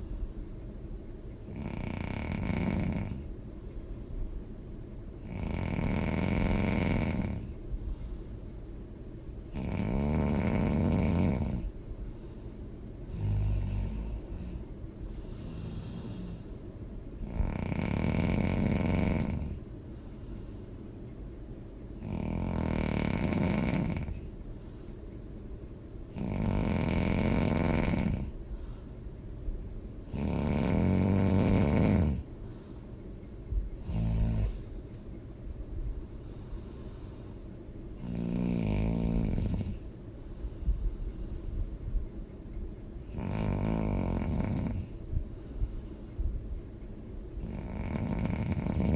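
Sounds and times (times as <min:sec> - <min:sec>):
quiet breathing: 0:00.0 - 0:04.4, 0:05.2 - 0:08.9, 0:09.5 - 0:48.9
person snoring loudly: 0:01.5 - 0:03.2, 0:05.2 - 0:07.5, 0:09.6 - 0:11.7, 0:17.2 - 0:19.6, 0:22.0 - 0:24.2, 0:26.2 - 0:28.3, 0:30.1 - 0:32.2, 0:38.0 - 0:39.8, 0:43.1 - 0:44.9, 0:47.4 - 0:48.9.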